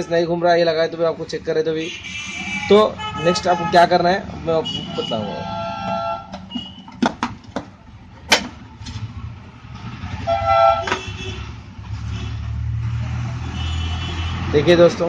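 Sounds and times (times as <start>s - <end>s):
vehicle horn: 1.8s - 3.9s, 4.6s - 6.8s, 10.3s - 12.4s, 13.5s - 14.6s
sharp clicks and knocks: 6.3s - 9.1s
vehicle engine rumbling by: 7.9s - 15.0s.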